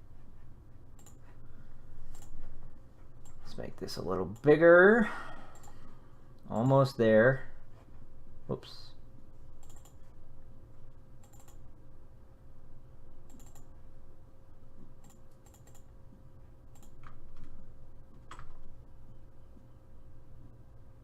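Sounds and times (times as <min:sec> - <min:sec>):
low electrical hum: 0:00.0 - 0:21.0
keyboard and mouse clicks: 0:01.0 - 0:01.2, 0:02.1 - 0:02.4, 0:09.6 - 0:10.0, 0:11.2 - 0:11.6, 0:13.2 - 0:13.7, 0:15.0 - 0:15.9, 0:16.7 - 0:18.6.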